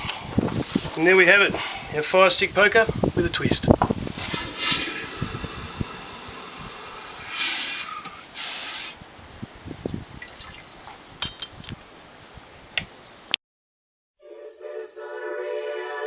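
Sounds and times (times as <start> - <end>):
short bursts of hiss: 4.0 - 9.0.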